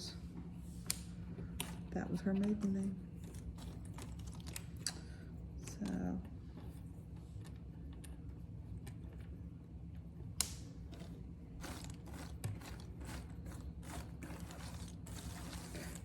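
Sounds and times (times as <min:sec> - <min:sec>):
low steady hum: 0:00.0 - 0:16.0.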